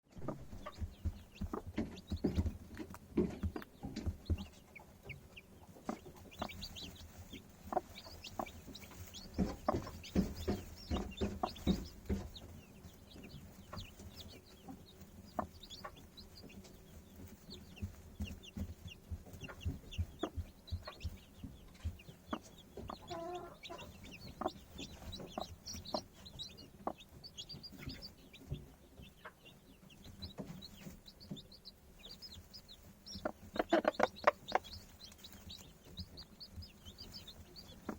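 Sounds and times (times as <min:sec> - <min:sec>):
chickens clucking: 0:00.1 - 0:37.9.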